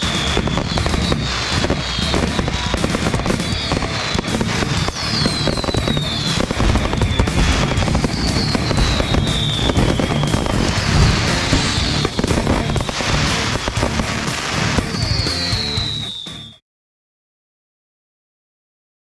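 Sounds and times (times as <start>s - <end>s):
firework booms: 0.0s - 15.2s
firework crackling: 0.0s - 16.4s
falling firework whistles: 0.0s - 16.6s.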